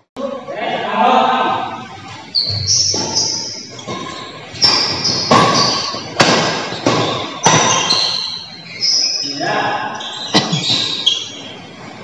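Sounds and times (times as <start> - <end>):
shoes squeaking on court floor: 1.9 - 12.0
racket striking shuttlecock: 2.9 - 8.4.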